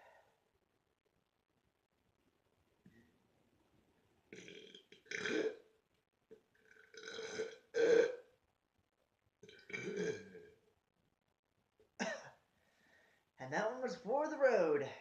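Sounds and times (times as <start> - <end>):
man burping: 4.3 - 5.6, 6.8 - 8.3, 9.4 - 10.5, 12.0 - 12.4.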